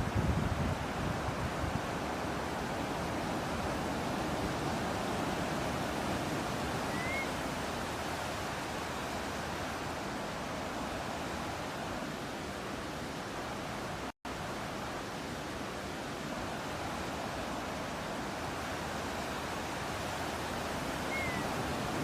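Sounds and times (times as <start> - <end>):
ocean surf: 0.0 - 22.0
short rising bird chirp: 6.9 - 7.3, 21.1 - 21.4.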